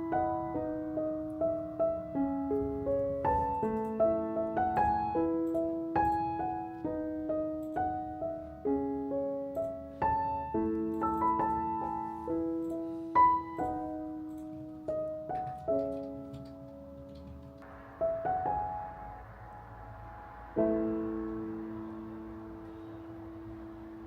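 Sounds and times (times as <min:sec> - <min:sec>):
gentle solo piano melody: 0:00.0 - 0:18.9.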